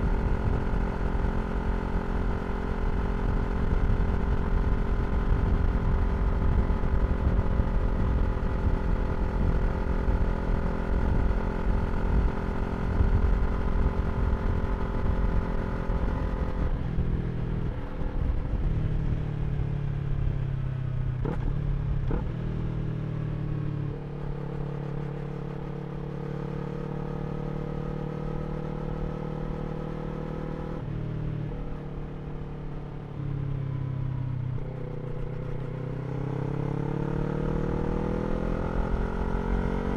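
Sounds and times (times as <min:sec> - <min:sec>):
motorcycle engine running: 0:00.0 - 0:39.9
engine revving: 0:35.9 - 0:39.9.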